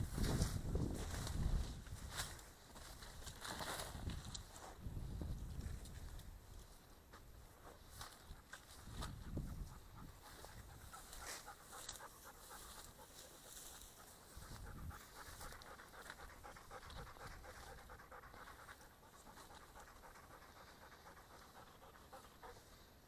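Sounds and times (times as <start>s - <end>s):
dog panting: 8.3s - 23.0s.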